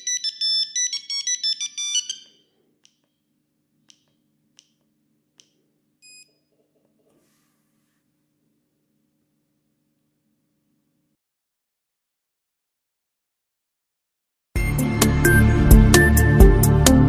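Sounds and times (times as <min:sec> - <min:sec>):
phone ringtone beeping melody: 0:00.0 - 0:02.4.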